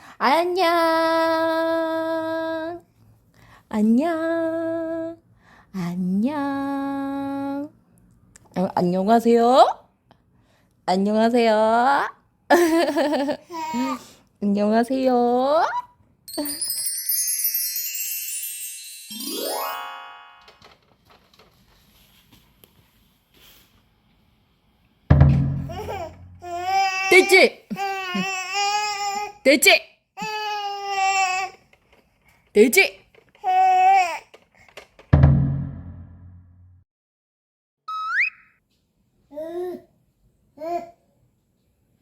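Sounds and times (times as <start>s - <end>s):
high tinkling chime tones: 16.3s - 20.5s
faint room sounds: 20.3s - 25.1s, 38.6s - 42.0s.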